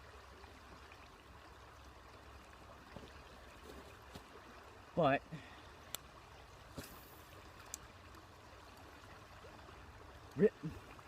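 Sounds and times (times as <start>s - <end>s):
creek water rushing: 0.0s - 11.0s
small ticks: 7.6s - 8.9s.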